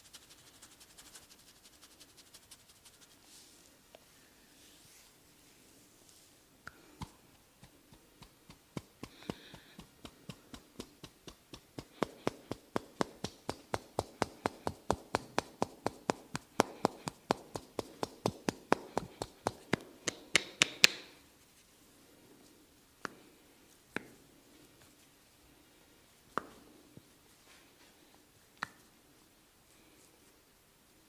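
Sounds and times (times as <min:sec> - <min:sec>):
percussive massage taps: 0:06.7 - 0:21.2, 0:26.3 - 0:26.7.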